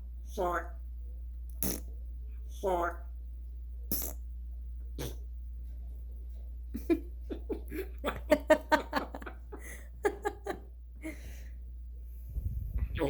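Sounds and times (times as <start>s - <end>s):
person laughing: 6.8s - 11.2s.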